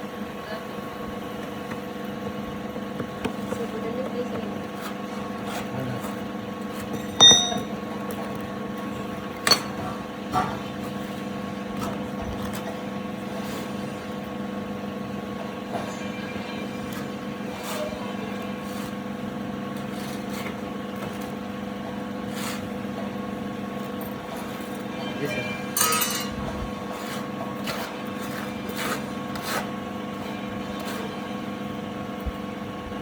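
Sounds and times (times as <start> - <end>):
workshop machinery hum: 0.0 - 33.0
sharp metal knocks: 7.2 - 7.8.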